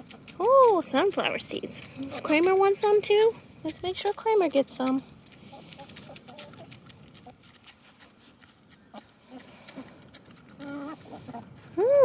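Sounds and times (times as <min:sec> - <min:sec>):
chickens pecking seeds: 0:00.0 - 0:12.0
chickens clucking: 0:04.8 - 0:11.8.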